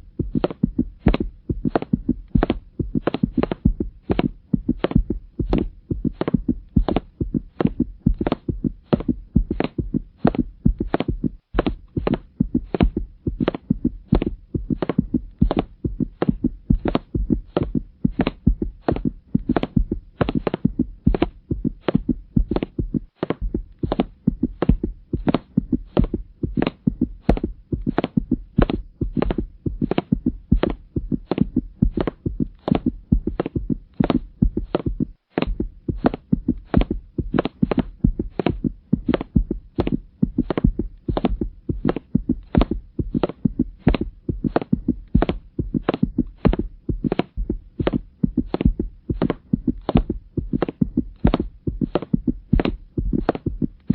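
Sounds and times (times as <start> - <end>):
regular thumping: 0.0 - 53.9.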